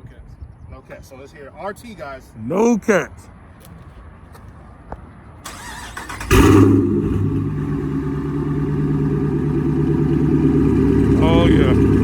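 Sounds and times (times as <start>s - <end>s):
car engine cranking: 5.5s - 12.0s
engine loud idle: 6.2s - 12.0s.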